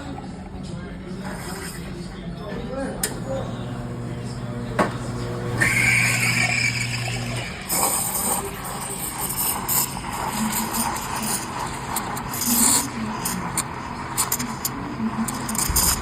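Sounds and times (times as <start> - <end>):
clicks: 3.0 - 7.5
espresso machine humming: 3.0 - 16.0.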